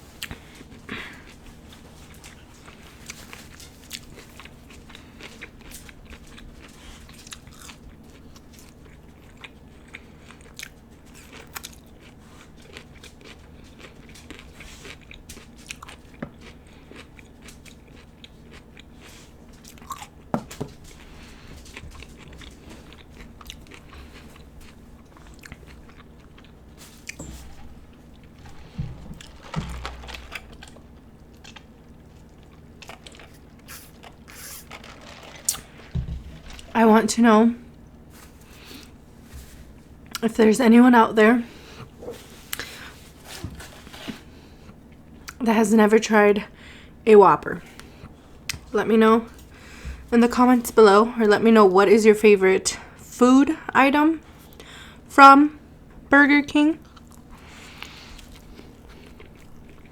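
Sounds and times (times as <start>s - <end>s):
close-up chewing and biting: 0.1s - 36.8s.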